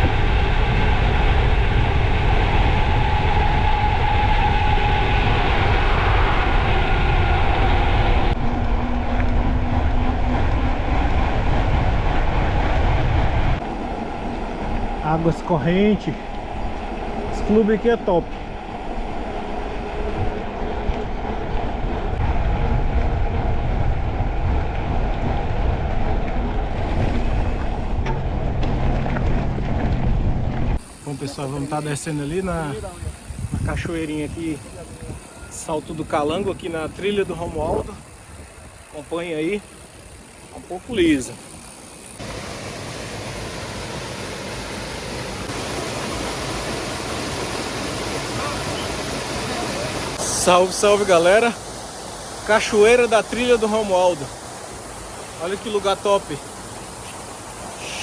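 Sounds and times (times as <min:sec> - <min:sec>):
low rumble: 0:00.0 - 0:31.0
stream water rushing: 0:13.6 - 0:22.2, 0:26.7 - 0:28.1, 0:30.8 - 0:58.0.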